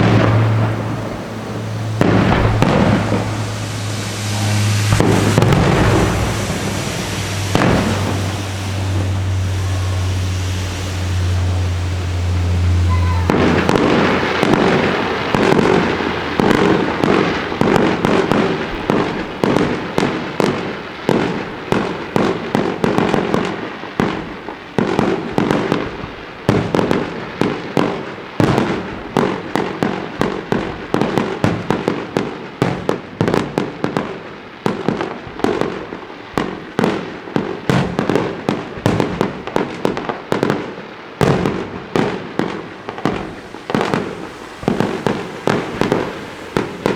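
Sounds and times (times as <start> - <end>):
rumbling wash of noise: 0.0 - 22.9, 41.6 - 46.9
fireworks bangs and cracks: 0.0 - 46.9.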